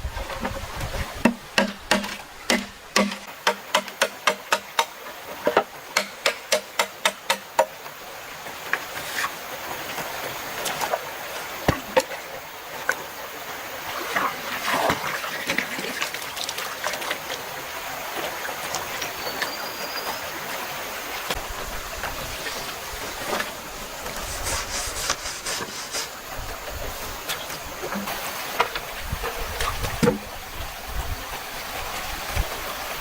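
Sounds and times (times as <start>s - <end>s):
stream rushing: 0.0s - 33.0s
sharp woody knocks: 1.3s - 4.9s
rustling: 22.0s - 28.0s.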